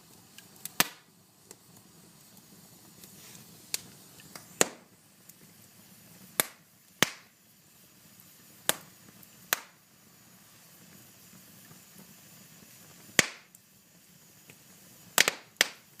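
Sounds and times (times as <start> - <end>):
faint steady hiss: 0.0 - 16.0
fire crackling and popping: 0.0 - 16.0.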